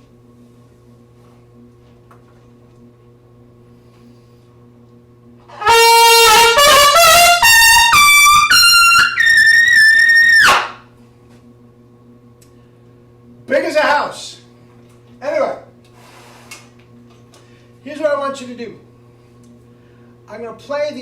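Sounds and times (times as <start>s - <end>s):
trumpet ascending run: 5.5s - 10.8s.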